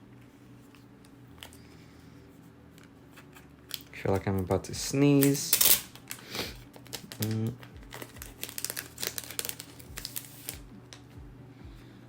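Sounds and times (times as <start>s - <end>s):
plastic sleeves crinkling: 5.2s - 11.0s.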